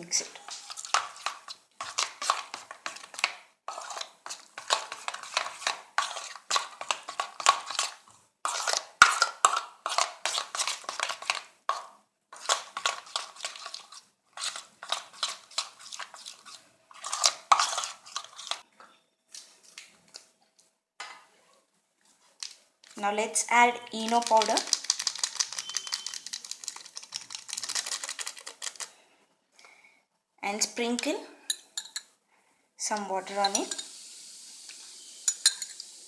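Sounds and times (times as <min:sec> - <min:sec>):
spoon scraping batter in bowl: 0:00.3 - 0:18.6.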